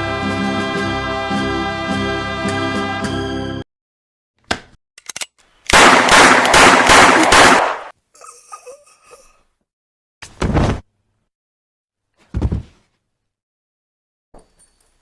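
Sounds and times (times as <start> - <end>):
music: 0.0 - 3.7
gunshots: 5.7 - 7.9
rapid gunfire burst: 5.8 - 7.9.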